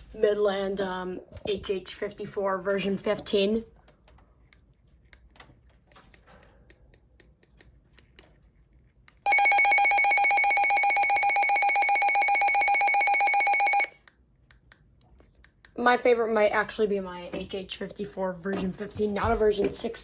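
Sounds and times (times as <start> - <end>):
weather radio alert siren: 9.3 - 13.9.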